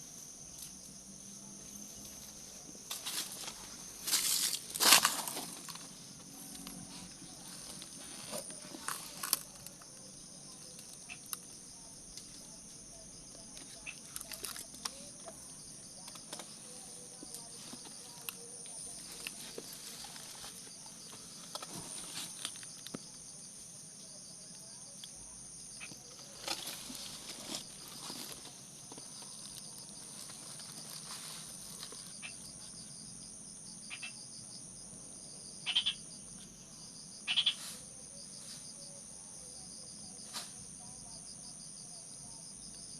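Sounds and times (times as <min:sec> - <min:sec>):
insects chirping: 0:00.0 - 0:42.9
small crackles and clicks: 0:13.6 - 0:15.4.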